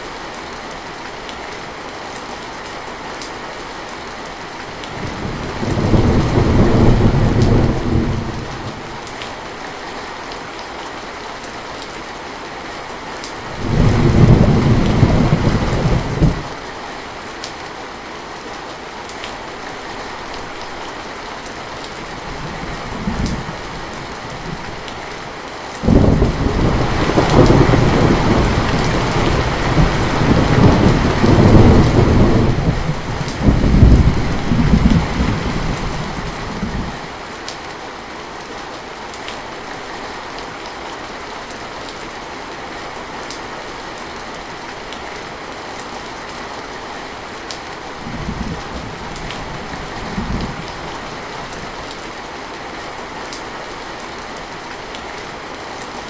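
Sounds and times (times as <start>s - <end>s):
heavy rain falling: 0.0s - 56.0s
thunder rumbling: 5.0s - 9.0s, 13.5s - 16.6s, 22.2s - 25.0s, 25.8s - 37.0s.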